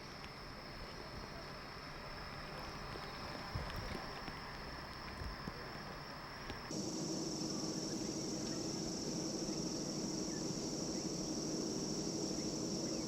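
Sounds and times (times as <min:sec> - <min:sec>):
low even hum: 0:00.0 - 0:13.0
high-pitched insect chirring: 0:06.7 - 0:13.0.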